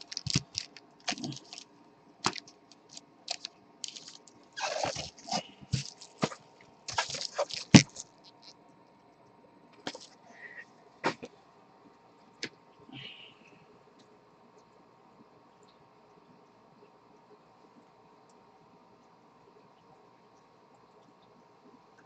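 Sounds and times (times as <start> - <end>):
crinkling rustles of card packs: 0.0 - 1.6, 2.2 - 8.5, 9.9 - 10.2.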